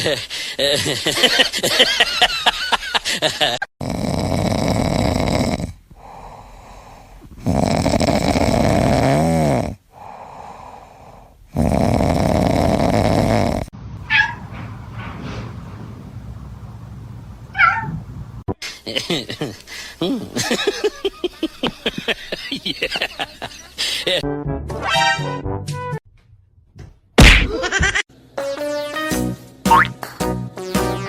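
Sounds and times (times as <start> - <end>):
cat snoring: 3.8 - 13.7.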